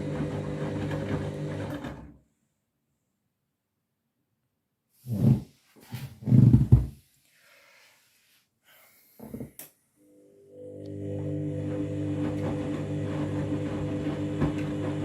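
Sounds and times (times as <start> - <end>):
washing machine drum motor: 0.0 - 1.8, 10.8 - 15.0.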